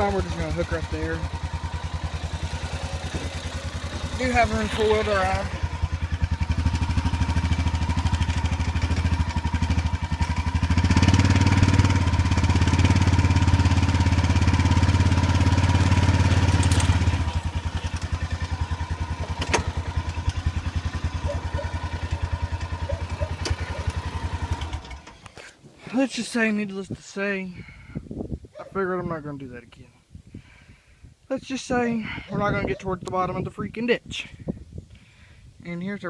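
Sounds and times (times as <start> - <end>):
atv engine revving: 0.0 - 25.5.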